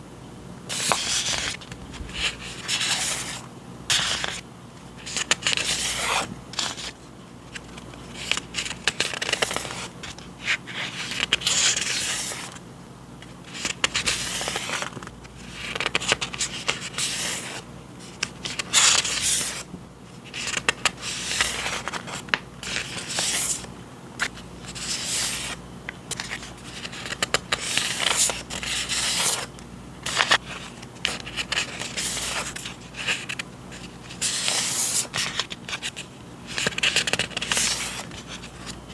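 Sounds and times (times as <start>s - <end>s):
paper and packaging rustling: 30.1s - 38.8s.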